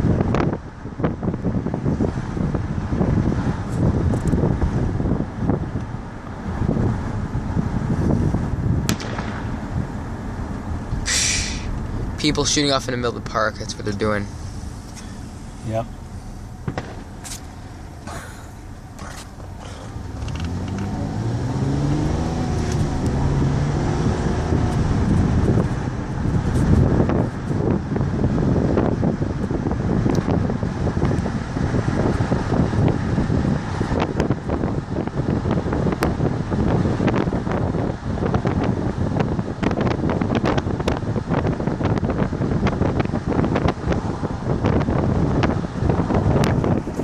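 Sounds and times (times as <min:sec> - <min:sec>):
road noise: 0:00.0 - 0:47.0
wind buffeting microphone: 0:00.0 - 0:47.0
car engine speeding up: 0:02.4 - 0:35.7
sharp clicks and pops: 0:20.2 - 0:20.9.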